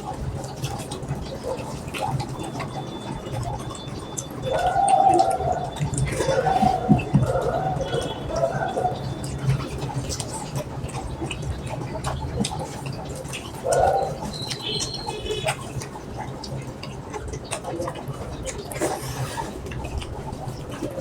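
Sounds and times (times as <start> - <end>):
wet chewing sounds: 0.0 - 21.0
bird cooing and chirping: 4.4 - 9.8, 13.6 - 15.4.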